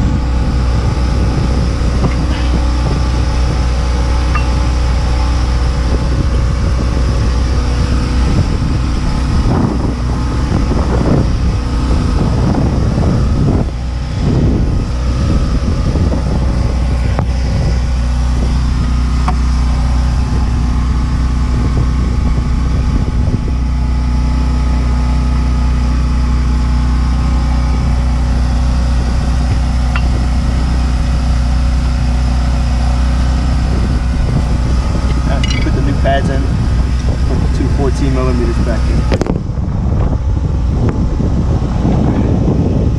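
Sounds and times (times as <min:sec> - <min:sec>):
low engine drone: 0:00.0 - 0:42.9
brake parts knocking and rattling: 0:35.0 - 0:36.1.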